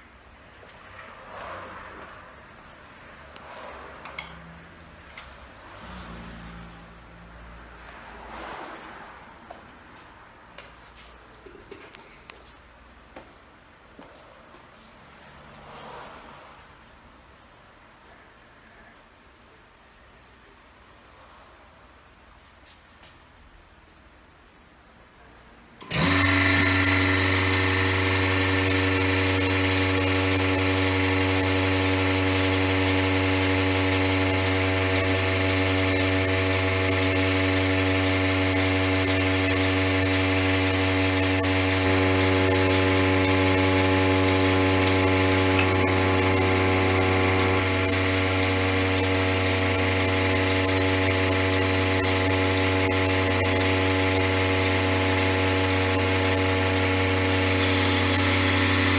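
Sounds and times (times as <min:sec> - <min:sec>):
vacuum pump motor hum: 0:25.8 - 0:58.9.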